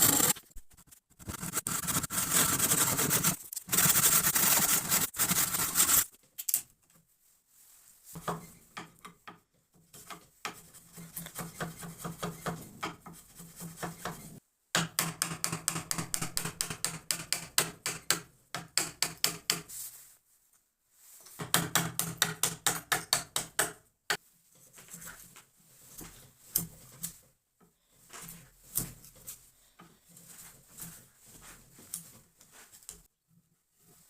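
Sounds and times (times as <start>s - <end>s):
hand tool strokes on wood: 0.0s - 0.4s.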